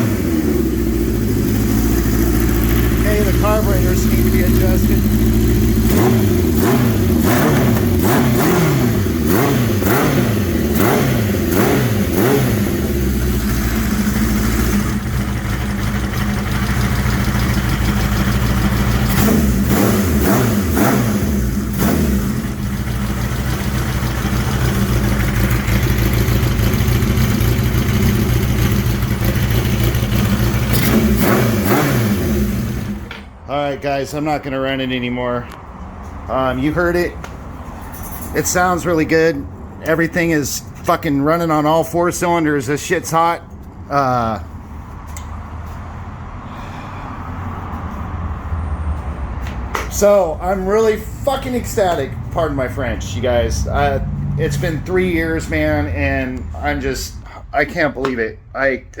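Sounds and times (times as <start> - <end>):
motorcycle engine revving and idling: 0.0 - 33.2, 47.4 - 57.8.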